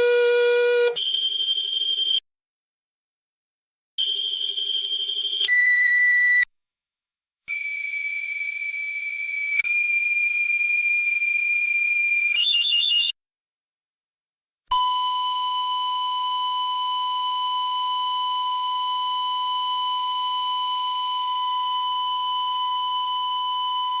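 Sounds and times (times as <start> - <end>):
long steady beep: 14.7 - 24.0.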